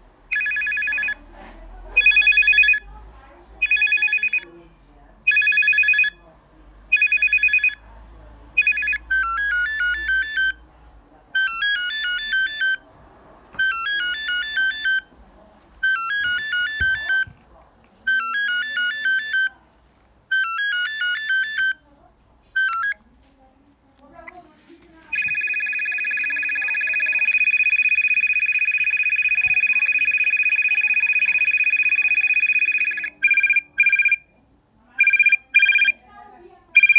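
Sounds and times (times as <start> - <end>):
high beeping ringtone melody: 0.3 - 1.2, 2.0 - 2.8, 3.6 - 4.4, 5.3 - 6.2, 6.9 - 7.8, 8.6 - 10.6, 11.4 - 12.8, 13.6 - 15.1, 15.8 - 17.3, 18.1 - 19.5, 20.3 - 21.8, 22.6 - 23.0, 25.1 - 34.2, 35.0 - 36.0
trilling electronic phone ring: 0.3 - 1.2, 2.0 - 2.8, 3.6 - 4.4, 5.3 - 6.2, 6.9 - 7.8, 8.6 - 10.6, 11.4 - 12.8, 13.6 - 15.1, 15.8 - 17.3, 18.1 - 19.5, 20.3 - 21.8, 22.6 - 23.0, 25.1 - 34.2, 35.0 - 36.0.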